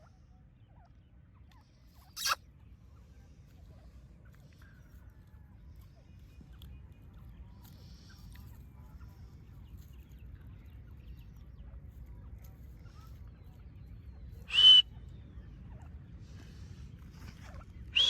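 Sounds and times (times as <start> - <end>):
francolin call: 14.5 - 14.9.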